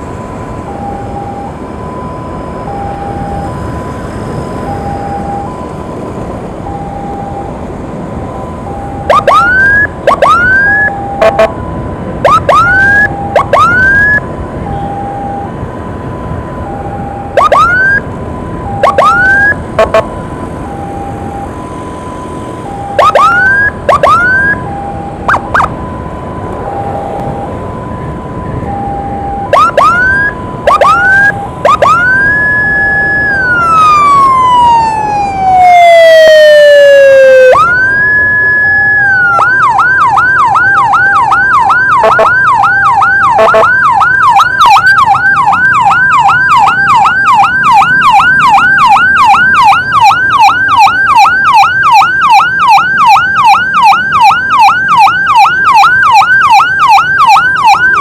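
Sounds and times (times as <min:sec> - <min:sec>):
road noise: 0:00.0 - 0:58.0
two-tone hi-lo siren: 0:00.0 - 0:58.0
siren whoop chirps: 0:08.3 - 0:11.6, 0:12.2 - 0:15.5, 0:16.6 - 0:21.6, 0:22.6 - 0:58.0.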